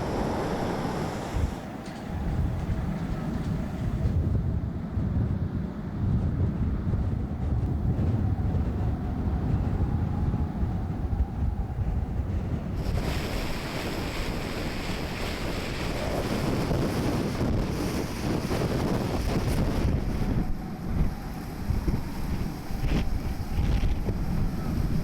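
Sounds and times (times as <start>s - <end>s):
rough sea rushing: 0.0s - 4.2s, 12.8s - 25.0s
wind buffeting microphone: 0.0s - 25.0s.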